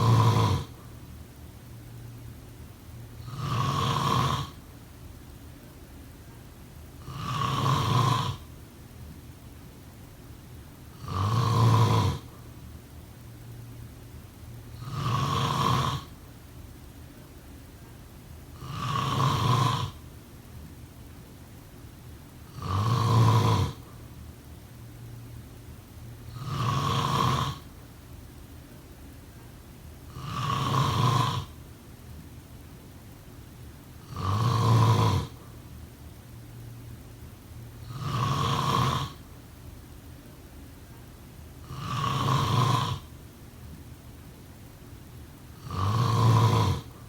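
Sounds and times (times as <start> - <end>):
person snoring: 0.0 - 0.8, 3.2 - 4.6, 7.0 - 8.5, 11.0 - 12.4, 14.8 - 16.2, 18.6 - 20.0, 22.5 - 23.9, 26.3 - 27.7, 30.1 - 31.6, 34.0 - 35.4, 37.8 - 39.2, 41.6 - 43.1, 45.6 - 47.0
quiet breathing hiss: 0.0 - 47.0.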